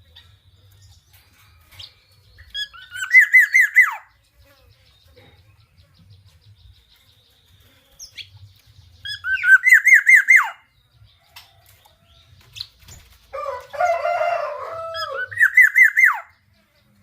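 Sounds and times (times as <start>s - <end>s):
bird whistling looping notes: 2.4s - 4.1s, 9.0s - 10.7s, 15.0s - 16.4s.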